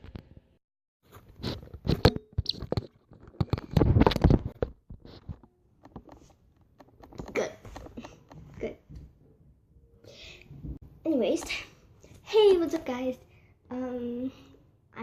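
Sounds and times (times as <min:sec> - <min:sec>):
objects being handled: 0:01.0 - 0:09.2.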